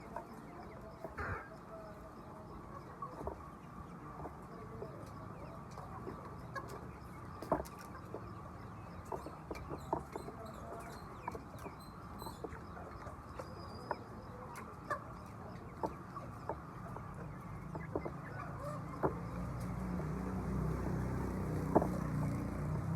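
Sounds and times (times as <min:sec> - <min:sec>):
hens clucking: 0:00.0 - 0:22.1.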